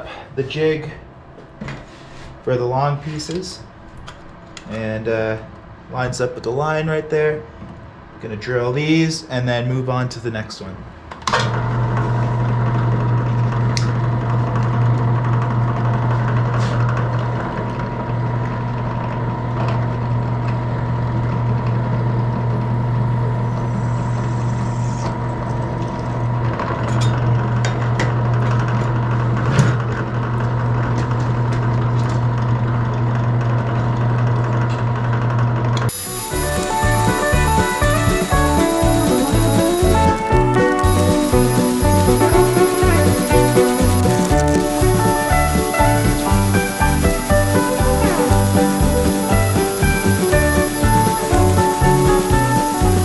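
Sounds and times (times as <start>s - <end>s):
electric drill humming: 35.9s - 53.0s.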